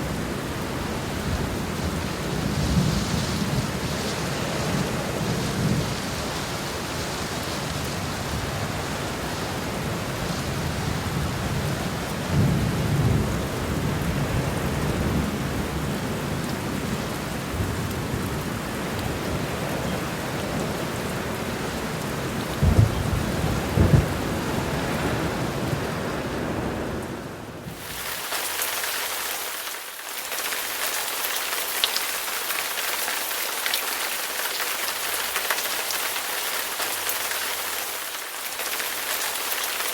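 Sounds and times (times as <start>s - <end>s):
crisp hissing rain: 0.0s - 39.9s
heavy rain: 0.0s - 39.9s
rolling thunder: 22.6s - 26.9s.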